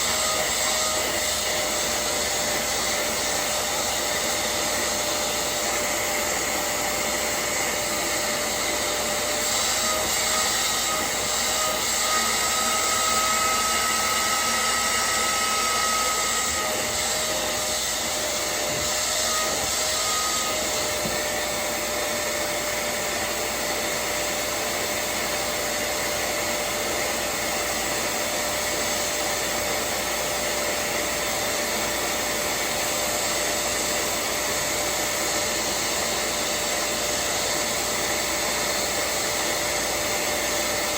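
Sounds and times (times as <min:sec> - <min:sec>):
suction motor whining: 0:00.0 - 0:40.9.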